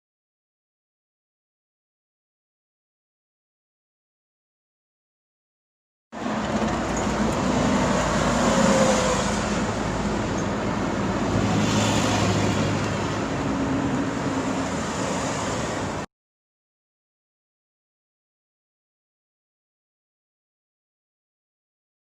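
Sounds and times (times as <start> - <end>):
road traffic with vehicles passing: 6.2 - 16.1.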